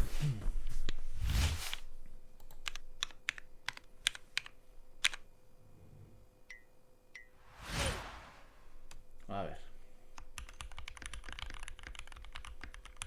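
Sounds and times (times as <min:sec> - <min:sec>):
mechanical keyboard keystrokes: 0:10.4 - 0:13.0.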